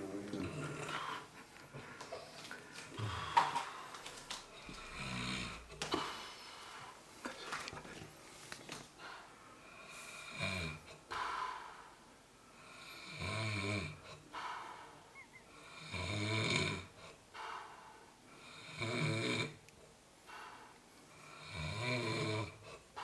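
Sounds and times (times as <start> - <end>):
person snoring: 0.0 - 1.2.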